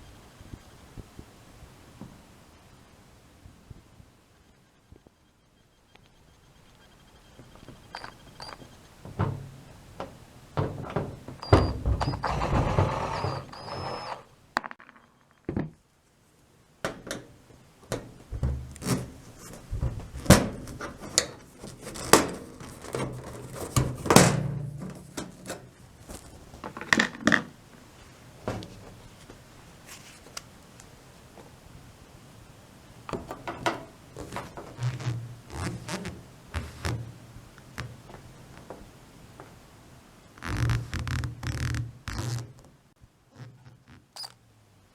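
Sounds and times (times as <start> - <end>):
dryer parts knocking and rattling: 7.4 - 14.0, 17.9 - 25.8, 28.4 - 29.1, 33.1 - 35.4.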